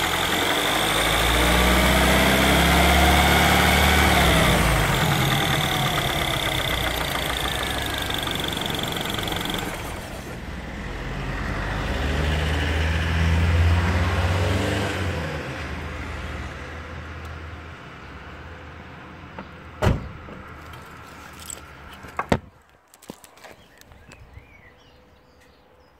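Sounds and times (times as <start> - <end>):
car engine running: 0.0 - 10.6.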